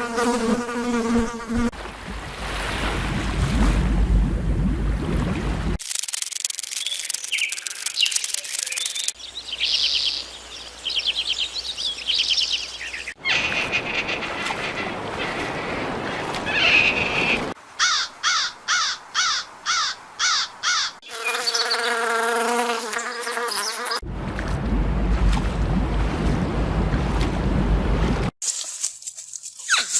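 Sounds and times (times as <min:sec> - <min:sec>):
wind and surf: 0:01.7 - 0:05.8, 0:12.8 - 0:17.6, 0:24.0 - 0:28.3
high chirps and rapid trills: 0:05.8 - 0:09.2
evenly spaced chirps: 0:06.3 - 0:10.1.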